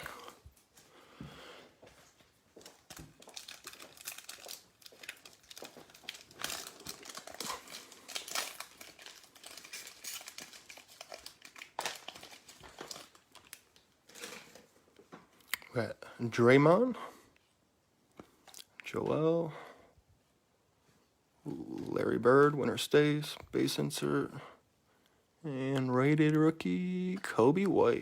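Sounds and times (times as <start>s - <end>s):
foil wrapper crinkling: 2.0s - 14.7s.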